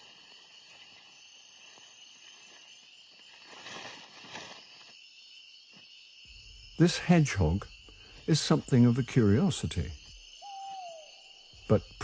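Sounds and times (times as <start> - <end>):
faint rustle: 0.0 - 5.0
insects chirring: 0.0 - 12.0.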